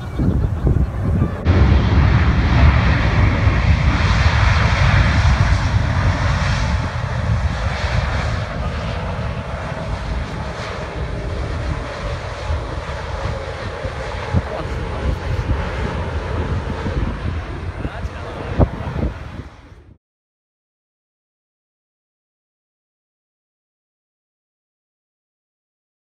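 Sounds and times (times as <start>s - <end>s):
airliner passing overhead: 0.0s - 20.0s.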